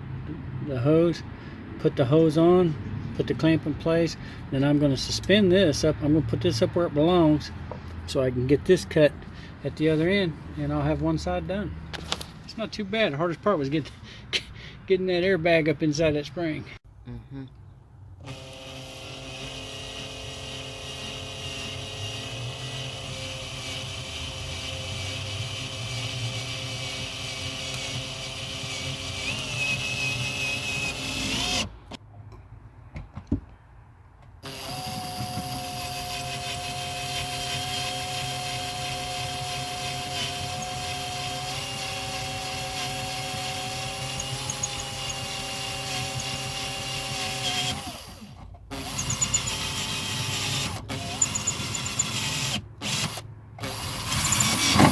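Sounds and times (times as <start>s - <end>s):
drill click: 18.2s - 31.7s, 34.4s - 54.9s
electric drill motor running: 18.2s - 31.7s, 34.4s - 54.9s.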